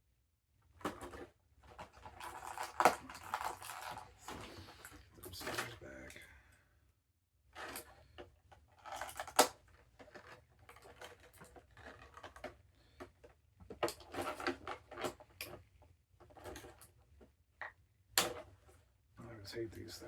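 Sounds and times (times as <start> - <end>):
plastic packaging rustling: 1.8 - 4.9.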